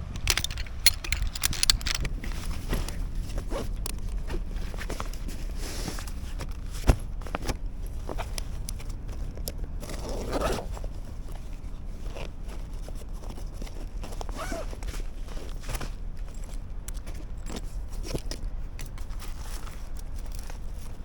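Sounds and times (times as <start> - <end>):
steady low rumble: 0.0 - 10.1
scraping rustle: 0.0 - 16.7
gear rustling: 0.0 - 21.0
small clicks: 0.2 - 2.1.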